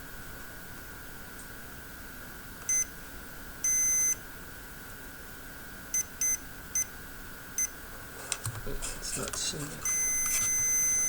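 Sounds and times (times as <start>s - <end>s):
electronic test instrument beeps: 2.7s - 2.9s, 3.6s - 4.2s, 5.9s - 6.9s, 9.8s - 11.0s.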